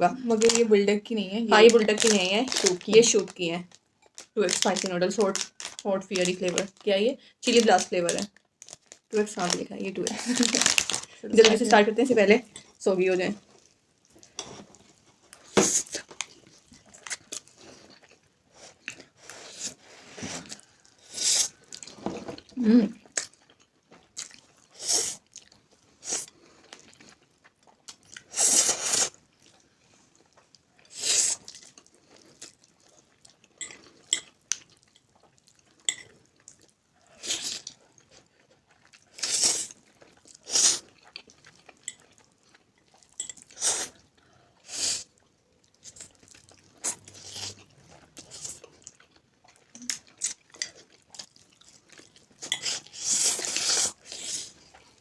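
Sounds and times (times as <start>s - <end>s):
people chewing noodles: 13.4s - 55.0s.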